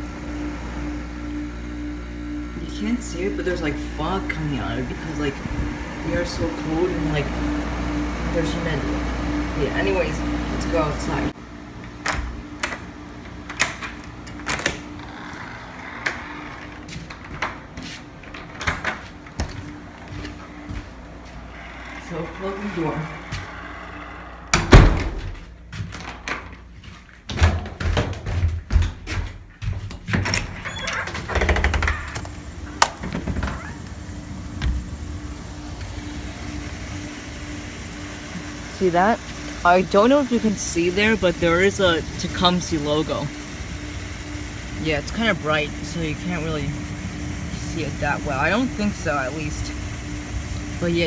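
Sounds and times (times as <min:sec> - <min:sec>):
air conditioner humming: 0:00.0 - 0:51.0
knocks and clicks of door handling: 0:29.9 - 0:33.7.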